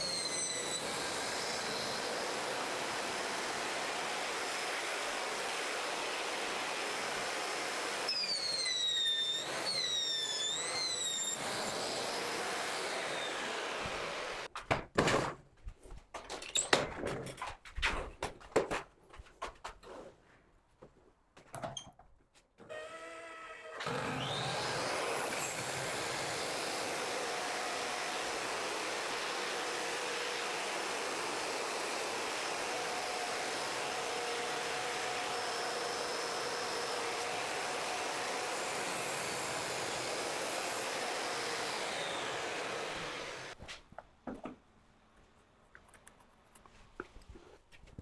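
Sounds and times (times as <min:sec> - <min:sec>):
electric power tool motor: 0:00.0 - 0:14.5, 0:22.7 - 0:43.6.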